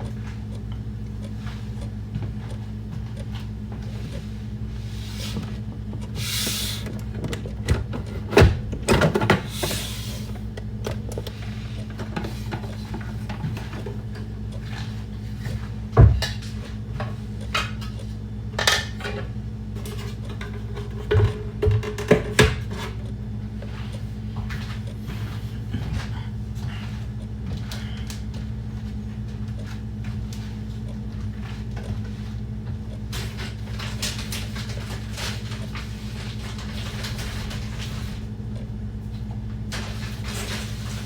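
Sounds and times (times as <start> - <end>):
steady low hum: 0.0 - 41.0
objects knocking and clattering: 7.1 - 9.8, 18.6 - 22.9.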